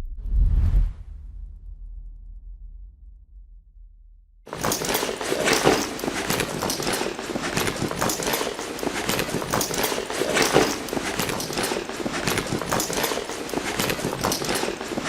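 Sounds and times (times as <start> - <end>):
bag rustling and crinkling: 4.5 - 15.0.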